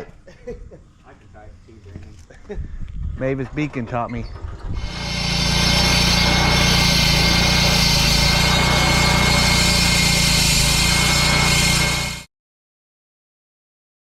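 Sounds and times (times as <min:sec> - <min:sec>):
saw blade whining: 0:03.7 - 0:12.3
concrete saw running: 0:04.6 - 0:12.3.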